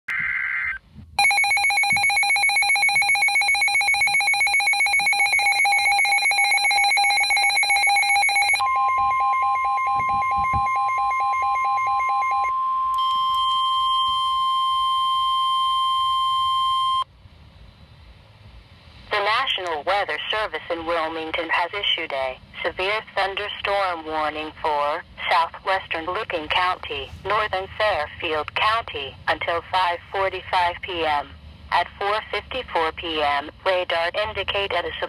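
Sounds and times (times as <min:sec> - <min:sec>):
pulsing electronic tone: 0:00.2 - 0:17.0
steady higher tone: 0:01.2 - 0:17.0
brief beep: 0:08.5 - 0:17.0.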